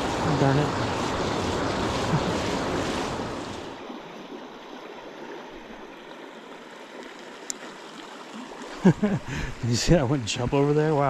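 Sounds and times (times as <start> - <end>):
wind noise on microphone: 0.0 - 3.8
river water running: 0.0 - 11.0.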